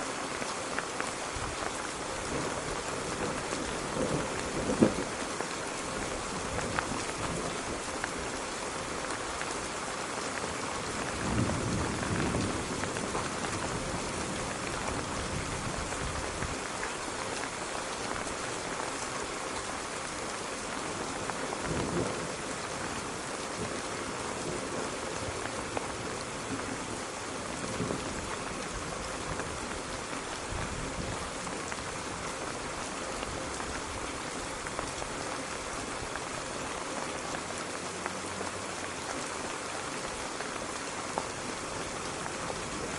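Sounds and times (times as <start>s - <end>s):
rain pattering: 0.0s - 42.9s
thunder rumbles: 1.4s - 7.9s, 10.8s - 16.6s.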